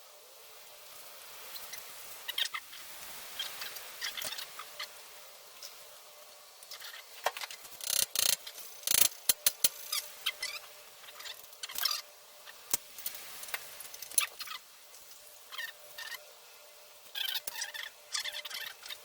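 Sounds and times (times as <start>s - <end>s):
mechanical clicking and knocking: 7.8s - 9.8s.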